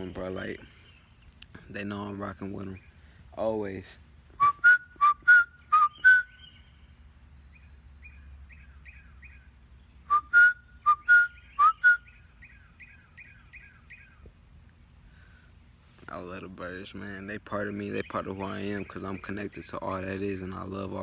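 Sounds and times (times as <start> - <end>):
bird chirping: 0.0 - 14.4, 16.1 - 21.0
man whistling two-note phrases: 4.4 - 6.4, 10.1 - 12.1.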